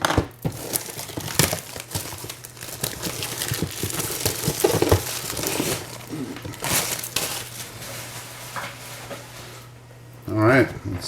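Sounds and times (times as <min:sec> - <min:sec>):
plastic wrapping crinkling and tearing: 0:00.3 - 0:09.8.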